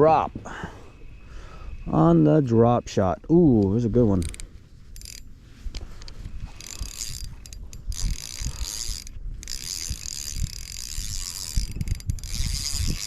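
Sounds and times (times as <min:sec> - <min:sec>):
fishing reel gears whirring: 0:04.2 - 0:05.3, 0:06.4 - 0:13.0.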